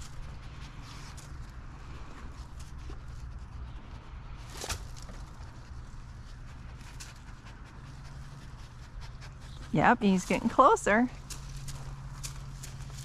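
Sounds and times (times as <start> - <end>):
low background rumble: 0.0 - 13.0
dog panting: 6.4 - 10.2.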